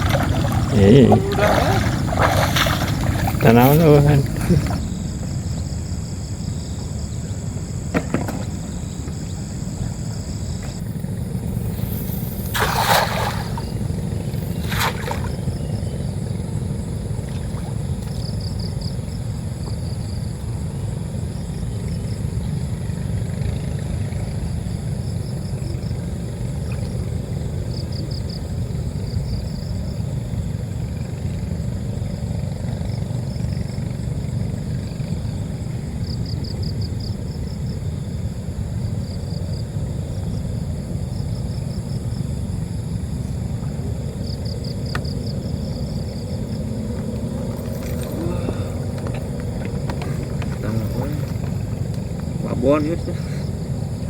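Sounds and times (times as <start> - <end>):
wind buffeting microphone: 0.0 - 4.8
faint high chirping trills: 8.8 - 19.2.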